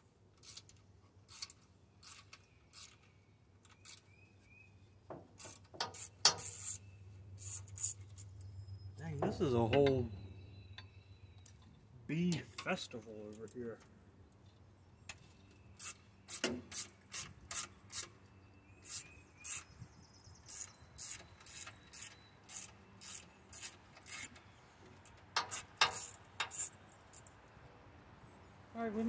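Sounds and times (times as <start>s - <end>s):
ratchet wrench rasping: 5.4s - 8.4s, 20.5s - 24.4s, 25.4s - 27.3s.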